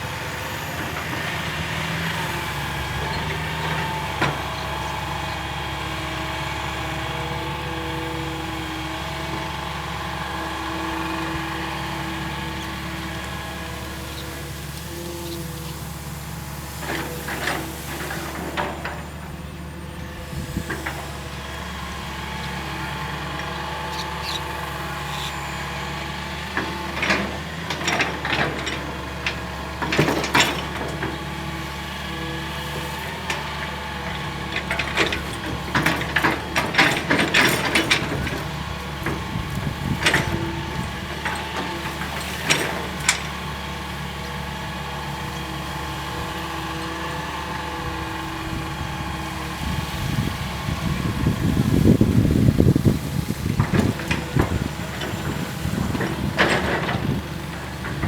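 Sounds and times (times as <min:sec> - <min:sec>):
excavator diesel engine running: 0:00.0 - 0:58.0
machine clanking and knocking: 0:16.8 - 0:19.6, 0:26.4 - 0:31.8, 0:32.7 - 0:58.0.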